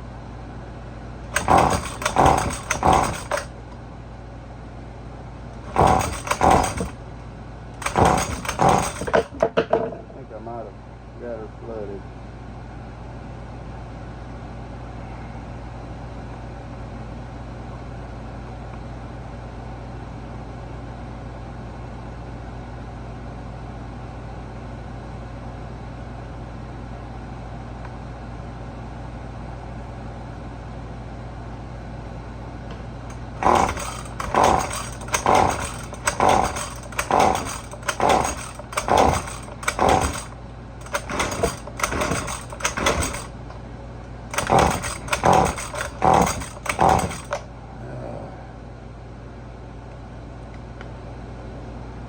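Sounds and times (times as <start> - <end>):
recoil pull-starter cranking: 1.2 - 3.6, 5.6 - 7.0, 7.8 - 9.4, 33.1 - 43.4, 44.3 - 47.4.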